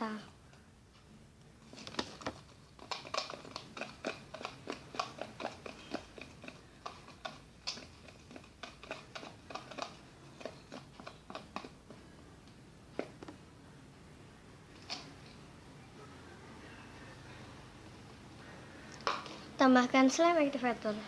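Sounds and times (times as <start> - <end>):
slime squelching in a bowl: 2.5 - 11.9.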